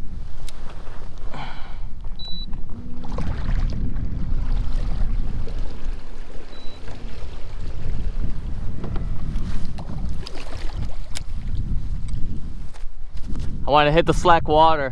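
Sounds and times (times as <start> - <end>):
water lapping around kayak hull: 0.0 - 13.6
low rumble: 1.2 - 12.6.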